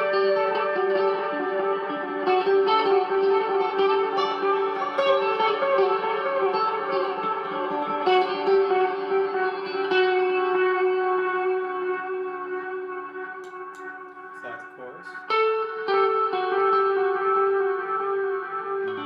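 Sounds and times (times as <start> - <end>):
electric guitar with chorus: 0.0 - 19.0.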